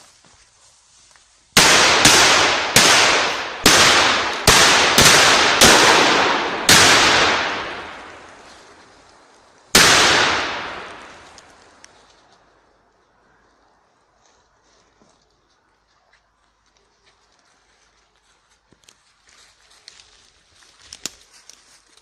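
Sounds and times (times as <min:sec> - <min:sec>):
firecrackers banging with echo: 0:01.6 - 0:09.0, 0:09.7 - 0:11.8.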